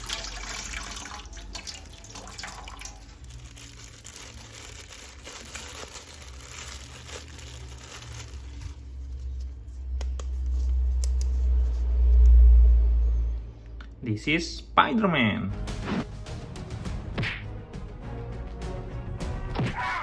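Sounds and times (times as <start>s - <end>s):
running tap water splashing: 0.0s - 3.2s.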